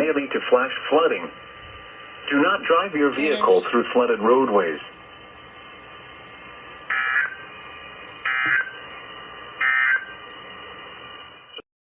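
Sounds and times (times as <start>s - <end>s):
radio hiss: 0.0s - 7.7s
digital data tone bursts: 3.0s - 3.8s, 6.9s - 8.8s.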